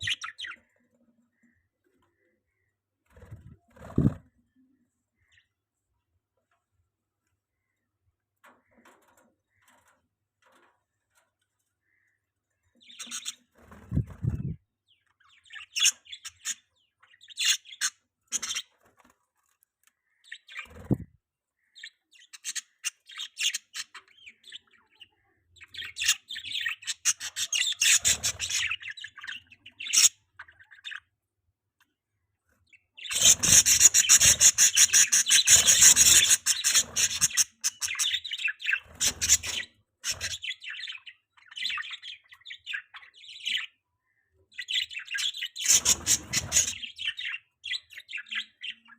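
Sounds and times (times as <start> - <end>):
budgies chirping: 0.0 - 4.3, 11.9 - 19.1, 20.1 - 21.0, 21.6 - 31.1, 32.7 - 48.9.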